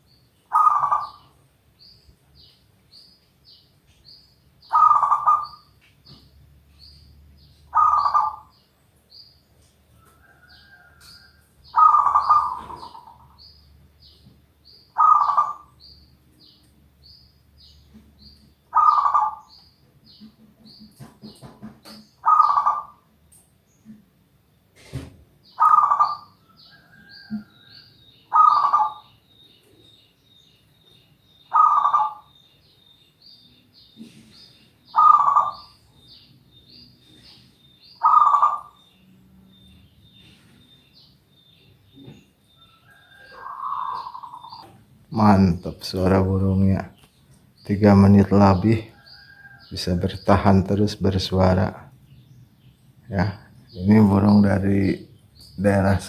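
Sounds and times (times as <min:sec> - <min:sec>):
dove cooing: 0:00.5 - 0:01.3, 0:04.7 - 0:05.7, 0:07.7 - 0:08.5, 0:10.4 - 0:13.4, 0:15.0 - 0:15.8, 0:18.7 - 0:19.6, 0:22.2 - 0:23.0, 0:25.6 - 0:29.2, 0:31.5 - 0:32.4, 0:34.0 - 0:35.8, 0:38.0 - 0:38.8, 0:42.9 - 0:44.8.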